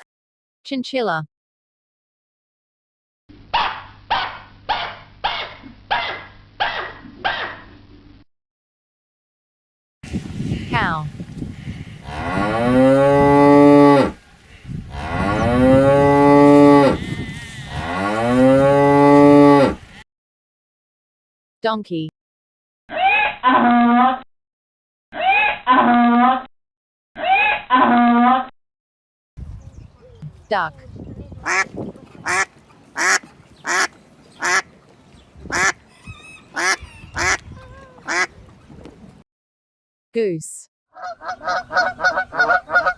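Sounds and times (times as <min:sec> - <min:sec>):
duck quacking: 0:03.5 - 0:07.6, 0:31.4 - 0:34.8, 0:35.4 - 0:38.4, 0:41.0 - 0:42.9
cow mooing: 0:12.0 - 0:14.2, 0:14.9 - 0:19.9
small birds chirping: 0:29.5 - 0:38.6.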